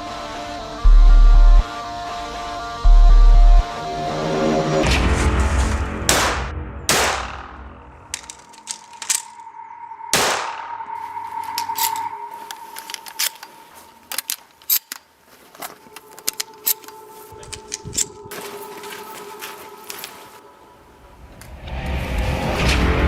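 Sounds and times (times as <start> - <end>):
loud shotgun shots: 6.1 - 7.6, 10.1 - 10.7.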